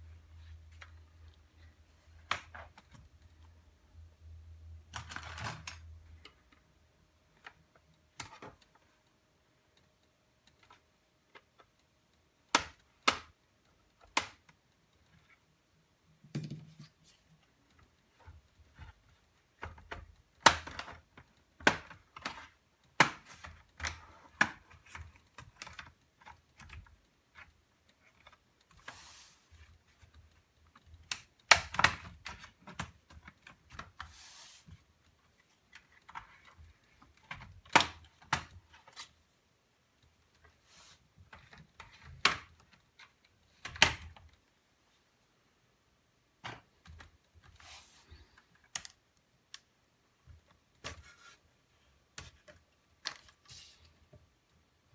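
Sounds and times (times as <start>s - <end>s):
laptop parts clicking and knocking: 9.8s - 15.5s, 16.2s - 28.8s, 29.6s - 34.0s, 35.4s - 39.2s, 41.2s - 44.4s.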